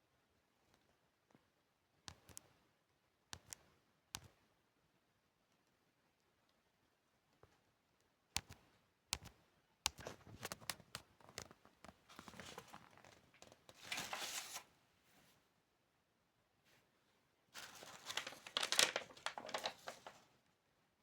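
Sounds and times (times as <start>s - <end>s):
sharp clicks: 3.4s - 4.4s, 8.4s - 8.6s, 9.2s - 11.6s
packaging crackling and rustling: 10.2s - 14.7s, 17.6s - 20.3s.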